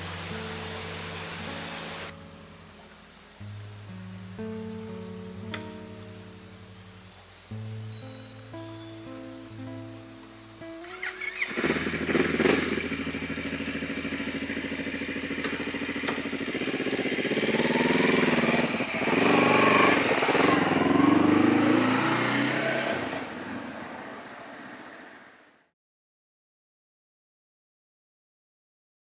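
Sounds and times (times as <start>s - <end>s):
motorcycle engine idling and revving: 10.8s - 25.3s.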